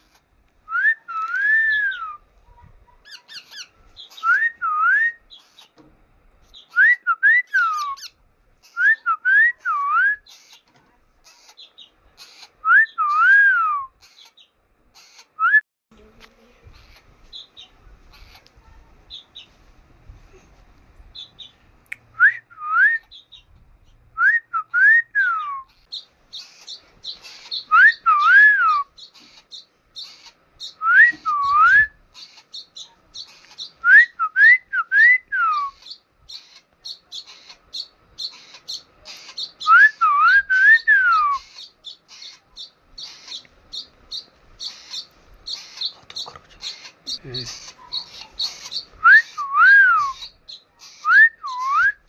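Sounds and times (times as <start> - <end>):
baby parrot chirping: 0.0 - 0.3, 2.6 - 5.8, 6.4 - 13.4, 14.0 - 15.4, 16.0 - 19.6, 21.1 - 21.6, 23.0 - 24.0, 25.3 - 34.2, 35.4 - 52.0
parrot whistles rising and falling: 0.7 - 2.2, 4.2 - 5.2, 6.7 - 8.1, 12.7 - 13.9, 24.2 - 25.8, 27.0 - 29.0, 30.6 - 32.0, 33.7 - 35.9, 39.4 - 41.5, 48.6 - 50.3, 51.0 - 52.0.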